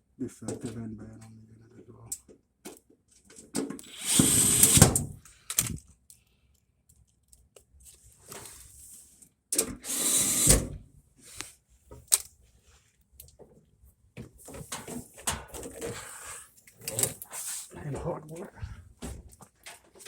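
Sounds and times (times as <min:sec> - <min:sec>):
power tool bursts: 0:03.8 - 0:05.0, 0:09.8 - 0:10.7.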